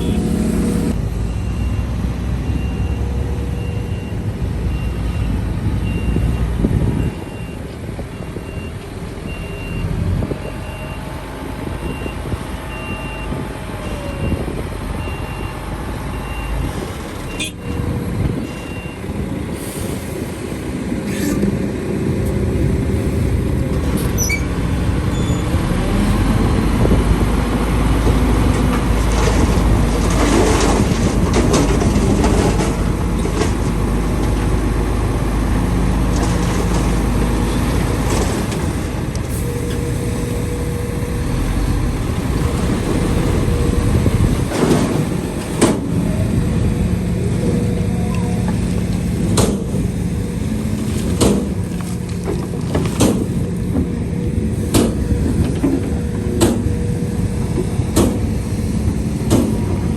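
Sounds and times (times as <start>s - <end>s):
deep rumble: 0.0s - 1.3s, 16.6s - 59.9s
diesel engines under load: 0.0s - 59.9s.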